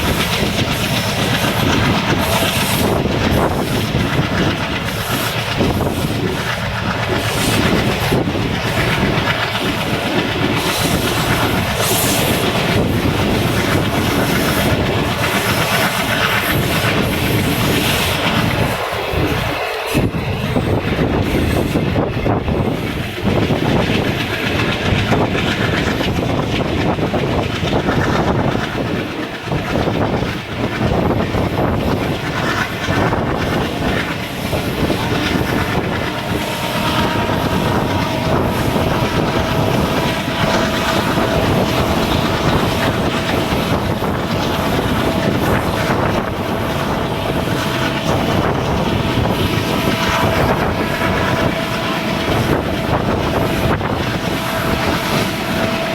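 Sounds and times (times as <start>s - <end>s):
wheels clattering over rail joints: 0.0s - 21.4s, 22.0s - 55.9s
diesel locomotive engine chugging: 0.0s - 55.9s.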